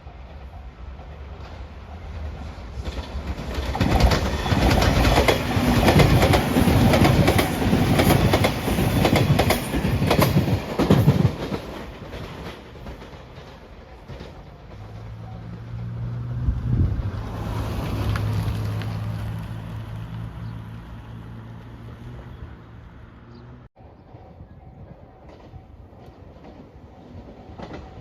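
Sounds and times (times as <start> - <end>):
electric train passing: 0.0 - 28.0
wheels clacking over rail joints: 0.2 - 15.8.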